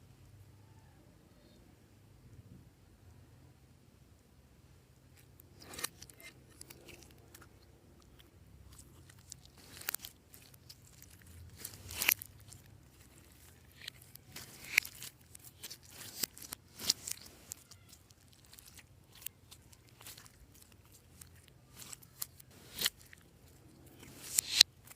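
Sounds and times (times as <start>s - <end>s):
slime popping and crackling: 5.2s - 24.9s.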